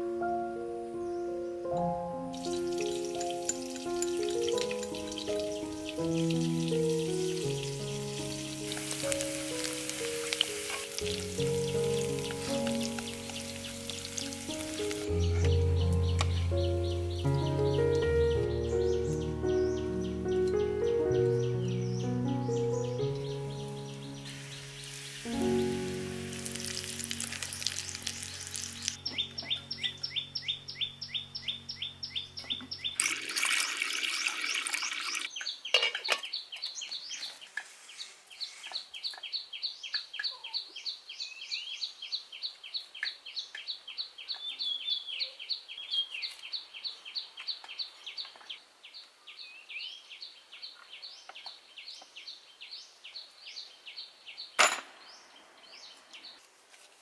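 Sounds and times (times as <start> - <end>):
background music: 0.0 - 33.5
bird chirping: 0.9 - 56.5
rushing water: 33.0 - 35.3.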